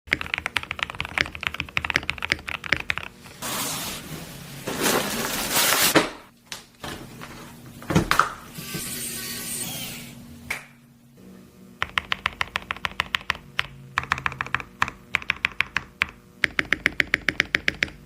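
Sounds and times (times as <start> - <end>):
typing on mechanical keyboard: 0.1 - 3.1, 11.8 - 18.0.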